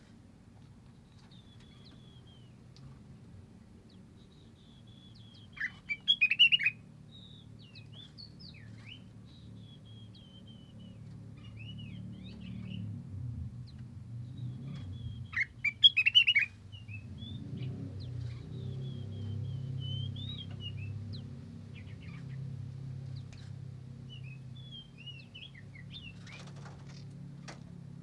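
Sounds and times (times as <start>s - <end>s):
low steady hum: 0.0s - 28.0s
songbirds whistling and trilling: 1.0s - 3.1s, 3.7s - 27.1s
rapid bird chirping: 4.0s - 12.9s, 13.6s - 26.9s.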